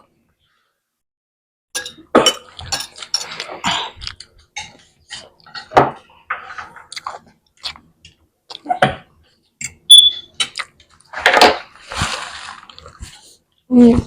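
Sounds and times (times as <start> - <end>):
cutlery clinking against dishes: 1.8 - 3.8.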